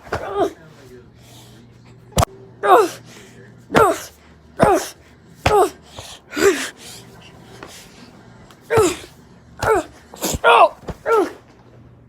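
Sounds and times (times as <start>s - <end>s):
person gasping cries: 3.8s - 6.9s.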